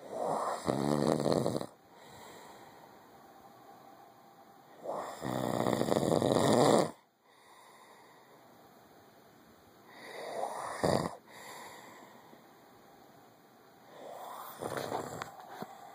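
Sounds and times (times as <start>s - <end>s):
man snoring heavily: 0.0s - 2.1s, 4.8s - 7.0s, 9.9s - 11.6s.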